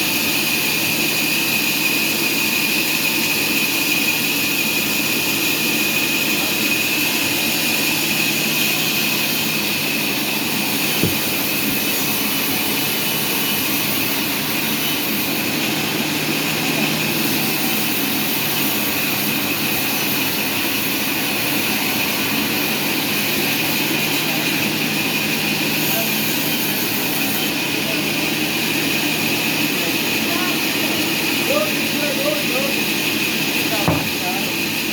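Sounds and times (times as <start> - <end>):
sawmill machinery running: 0.0 - 34.9
sharp knock: 11.0 - 11.9, 33.9 - 34.2.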